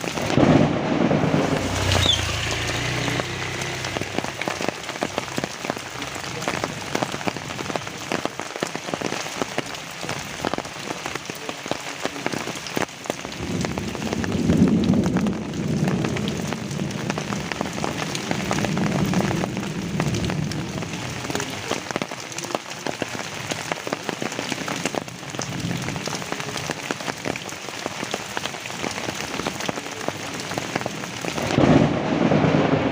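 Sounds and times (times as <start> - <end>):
rain falling on leaves: 0.0 - 32.9
low rumbling: 0.2 - 7.5.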